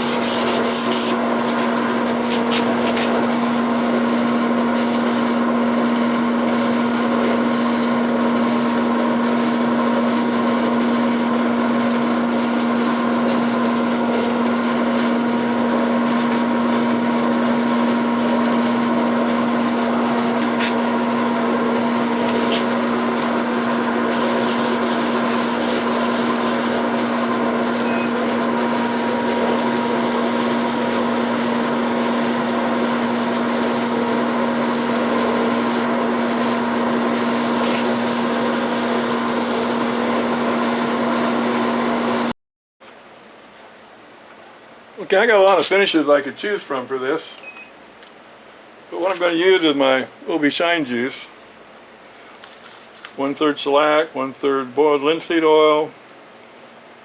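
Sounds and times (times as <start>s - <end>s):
sanding hiss: 0.0s - 1.2s, 24.1s - 26.8s, 29.4s - 42.3s
wood lathe humming: 0.0s - 42.3s.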